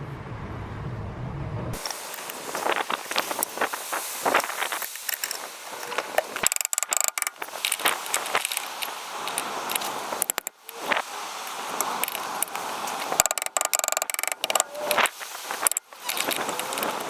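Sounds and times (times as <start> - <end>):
metal hand tools clinking: 1.8 - 17.0
sharp clicks: 1.8 - 17.0.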